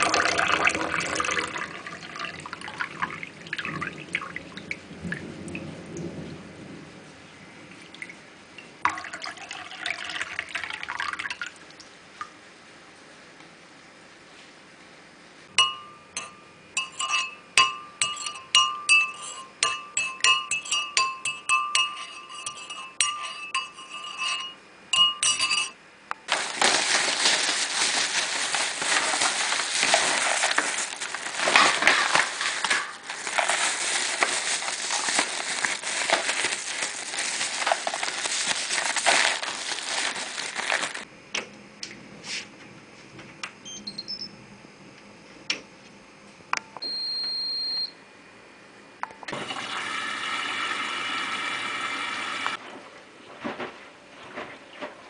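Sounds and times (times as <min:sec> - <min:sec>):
rapid clinking on glass: 0:15.6 - 0:25.8.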